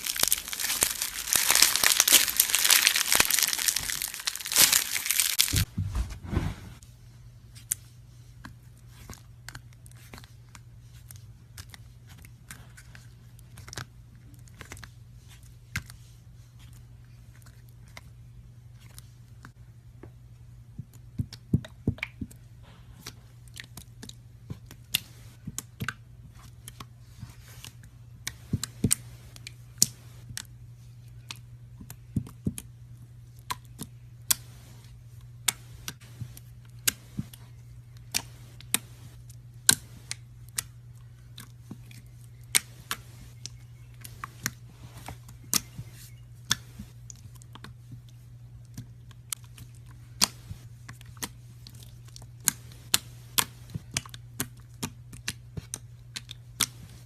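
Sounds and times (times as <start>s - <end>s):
slime clicking and popping: 0.0s - 5.7s.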